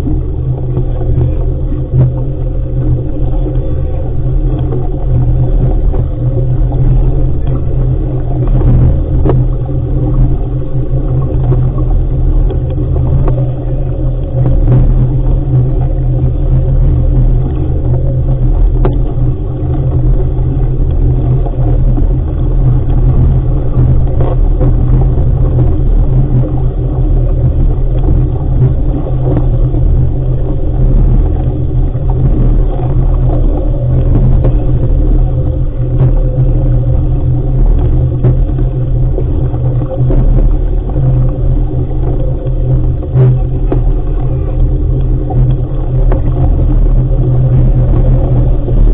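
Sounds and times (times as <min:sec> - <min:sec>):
wind buffeting microphone: 0:00.0 - 0:48.9.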